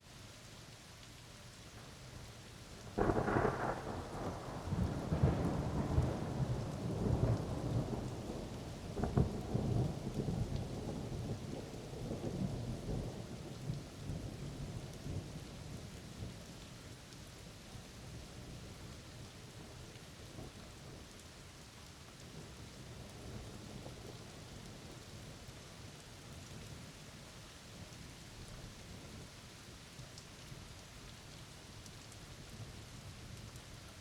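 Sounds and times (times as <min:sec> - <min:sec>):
steady rain: 0:00.0 - 0:34.0
thunder crack and rolling rumbles: 0:02.8 - 0:16.3.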